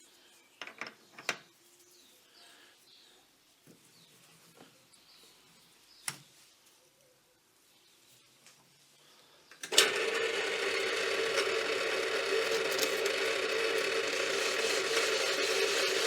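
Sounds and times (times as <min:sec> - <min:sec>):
gear noise: 0:09.7 - 0:16.0
lathe whine: 0:09.7 - 0:16.0.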